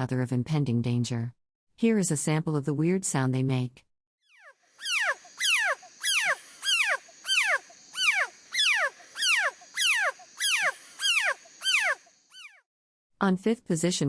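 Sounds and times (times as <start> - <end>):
frog calling: 4.3 - 12.6.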